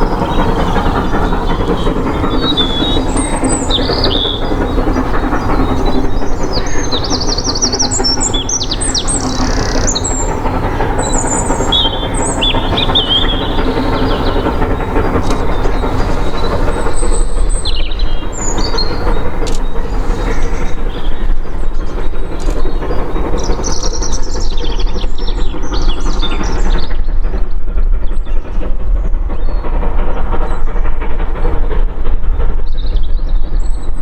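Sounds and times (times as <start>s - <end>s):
songbirds chirping: 0.0s - 27.0s
steam train rumbling on rails: 0.0s - 34.0s.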